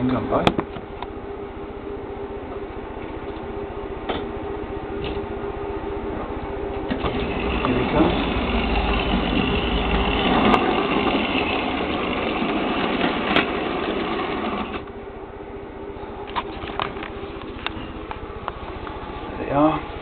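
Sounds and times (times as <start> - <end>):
model train motor whirr: 6.9 - 14.9.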